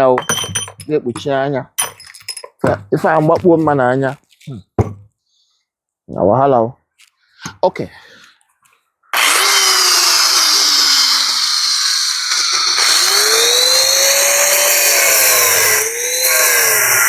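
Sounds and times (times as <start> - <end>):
angle grinder cutting metal: 9.2 - 17.0.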